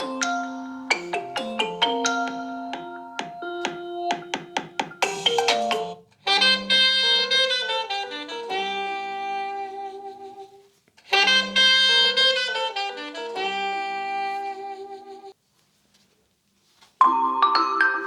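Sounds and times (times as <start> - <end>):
phone ringtone melody: 0.0 - 6.0, 17.0 - 18.0.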